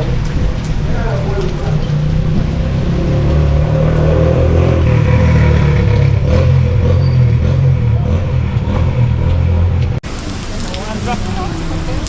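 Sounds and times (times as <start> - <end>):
vehicle engine rumbling: 0.0 - 12.0.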